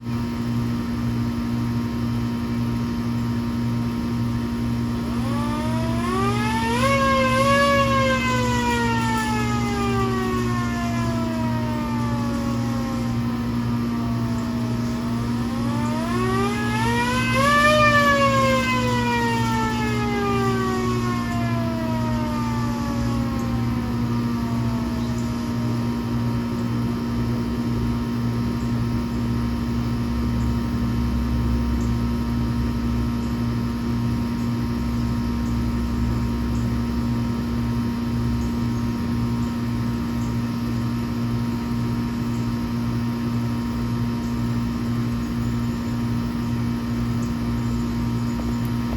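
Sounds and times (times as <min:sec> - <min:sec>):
steady low hum: 0:00.0 - 0:48.9
hand-cranked siren wailing: 0:04.8 - 0:28.0.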